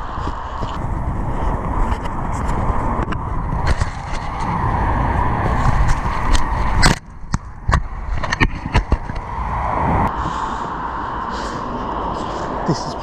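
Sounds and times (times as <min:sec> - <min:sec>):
loud rumbling noise: 0:00.0 - 0:13.0.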